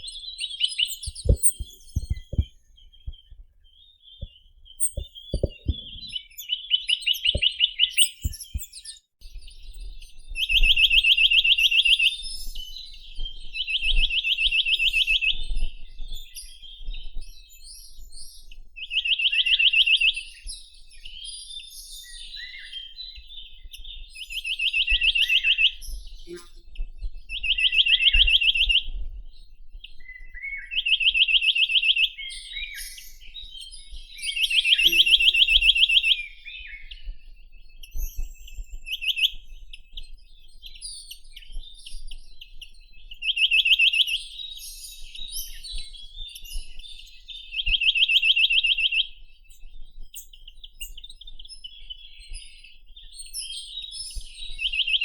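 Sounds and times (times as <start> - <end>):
faint high chirps: 0.0 - 3.4, 4.2 - 6.6, 34.4 - 35.7
low knocks: 1.1 - 3.2, 4.2 - 6.2
bird trilling: 34.6 - 35.8.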